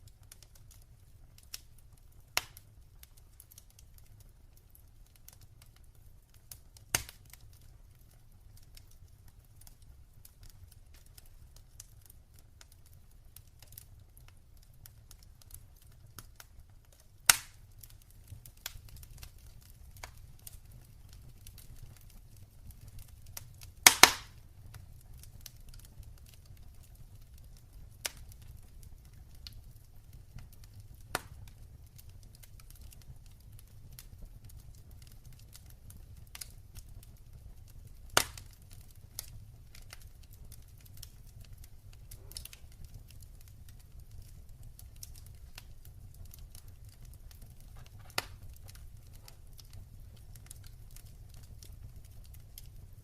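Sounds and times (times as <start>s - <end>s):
low rumble of flames: 0.0s - 53.0s
wood fire crackling: 0.0s - 53.0s
sharp pops of fire: 1.4s - 3.8s, 6.4s - 7.6s, 15.1s - 52.9s.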